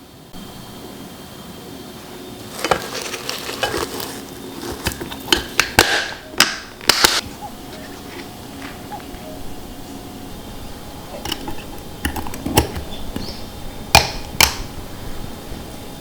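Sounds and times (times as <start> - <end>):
utensils clinking against dishes: 2.4 - 9.1, 11.1 - 14.7.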